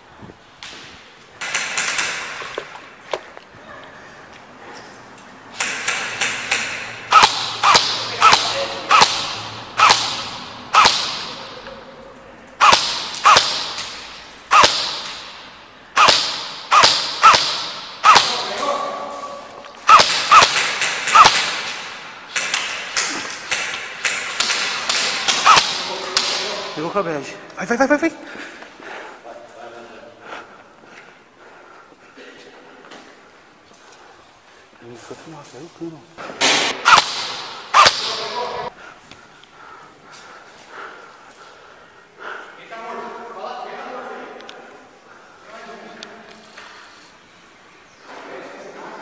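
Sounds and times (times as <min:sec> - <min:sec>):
airsoft gun shots: 0:01.4 - 0:02.5, 0:05.5 - 0:11.5, 0:12.6 - 0:18.6, 0:19.8 - 0:26.6, 0:36.4 - 0:38.5.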